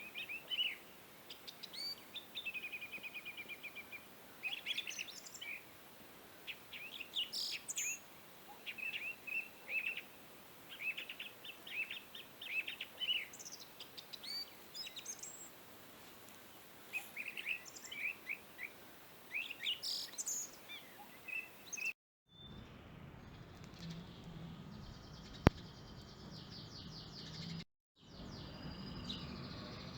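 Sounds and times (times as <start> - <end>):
small birds chirping: 0.0 - 5.7, 6.4 - 29.9
faint steady hiss: 0.0 - 21.8.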